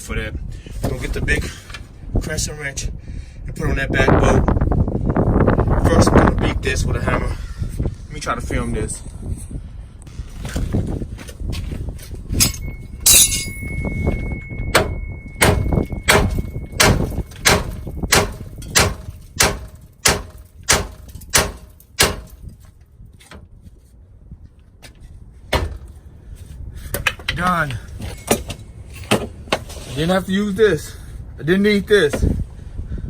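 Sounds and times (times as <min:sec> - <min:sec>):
hammer striking steel: 0:12.4 - 0:22.4.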